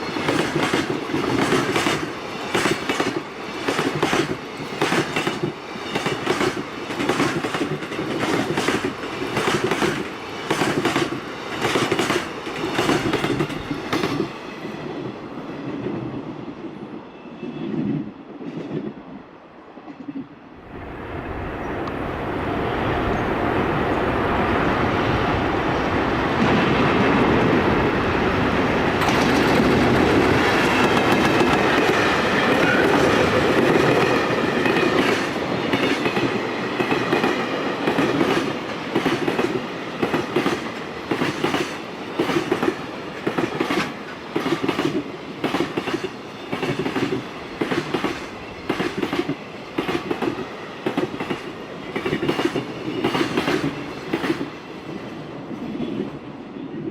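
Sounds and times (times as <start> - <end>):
train wheels clattering over rail joints: 0.1 - 14.4.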